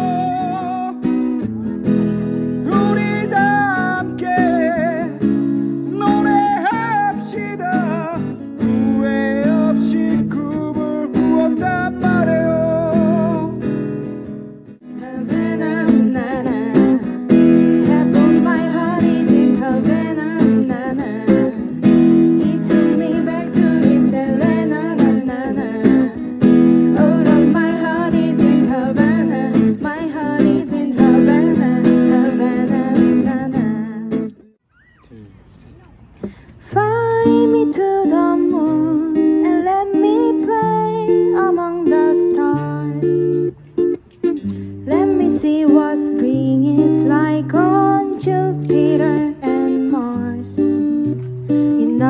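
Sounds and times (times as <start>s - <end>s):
strummed acoustic guitar: 0.0s - 34.6s, 36.2s - 52.0s.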